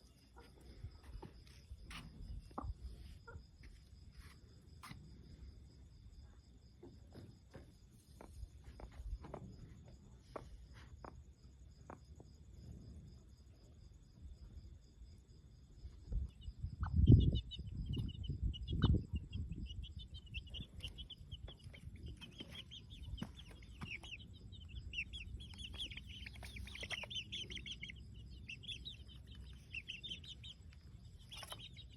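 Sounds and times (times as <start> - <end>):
chicks peeping: 15.9 - 31.9
hens clucking: 18.8 - 31.9.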